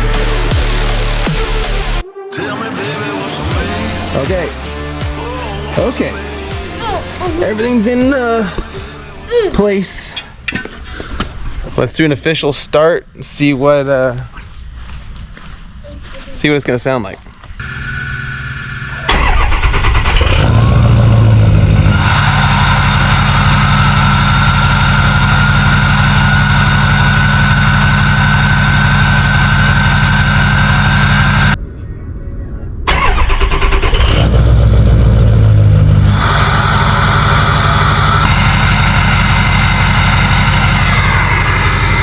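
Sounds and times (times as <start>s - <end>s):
high engine whine: 0.0s - 11.6s, 17.3s - 42.0s
diesel truck engine idling: 18.5s - 31.6s, 34.2s - 42.0s.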